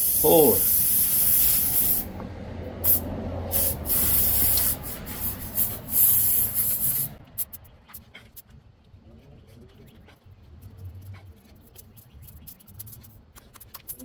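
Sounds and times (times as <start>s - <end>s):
air hissing from tyre: 0.0s - 7.2s.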